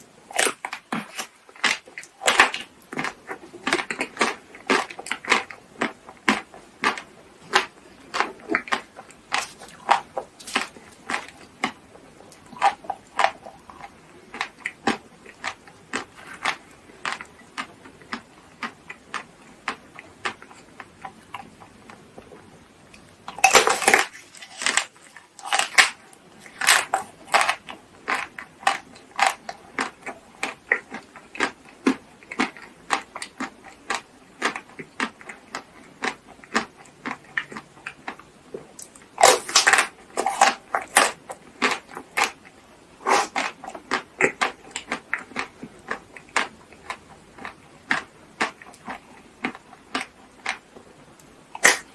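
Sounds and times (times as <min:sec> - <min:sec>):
chewing with wet mouth clicks: 0:00.3 - 0:51.9
loud crunching bites: 0:03.7 - 0:11.8, 0:23.3 - 0:30.6, 0:39.2 - 0:42.4, 0:51.6 - 0:51.9.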